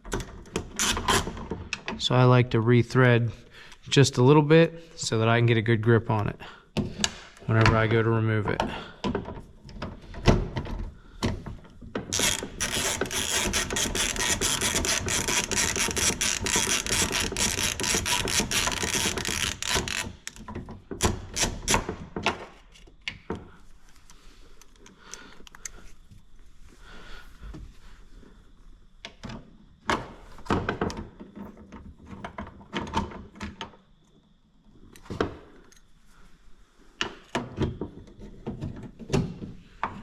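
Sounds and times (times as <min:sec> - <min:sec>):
ratchet wrench clicking: 0:12.1 - 0:20.4.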